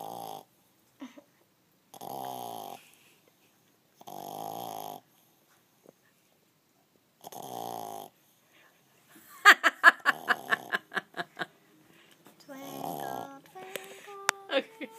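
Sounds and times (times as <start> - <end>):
puppy snoring: 0.0 - 0.6, 1.9 - 3.0, 4.0 - 5.4, 7.2 - 8.3, 10.1 - 10.9, 12.5 - 13.4.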